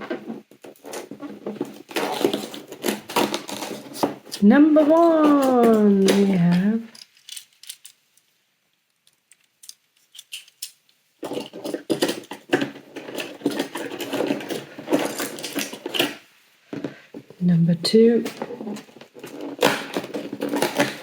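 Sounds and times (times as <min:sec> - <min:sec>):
packaging crinkling: 0:00.0 - 0:08.0, 0:10.0 - 0:16.3, 0:18.2 - 0:21.0.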